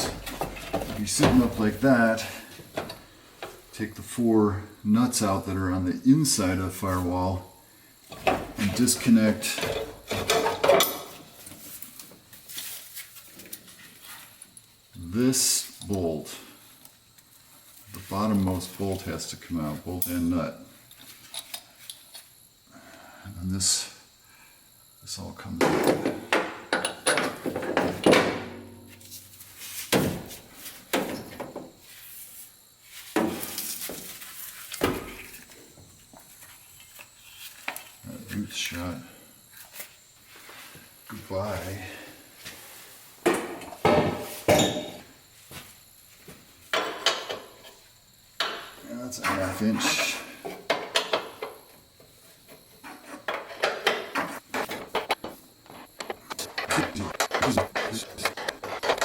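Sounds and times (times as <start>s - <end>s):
metal clunks and knocks: 0.0s - 1.9s, 2.6s - 3.6s, 8.1s - 11.2s, 25.6s - 29.0s, 46.7s - 47.6s, 48.4s - 51.7s, 52.8s - 55.4s
scraping and rustling: 54.2s - 59.0s.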